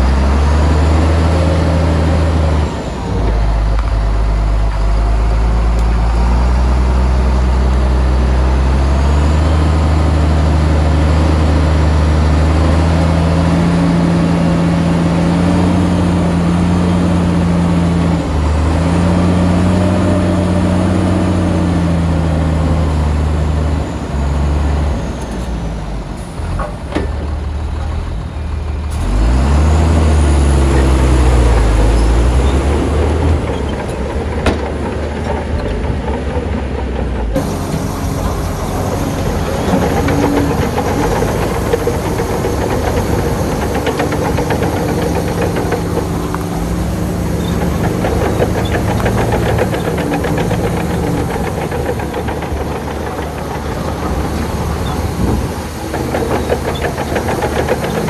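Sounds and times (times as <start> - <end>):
bulldozer diesel engine revving: 0.0 - 58.0.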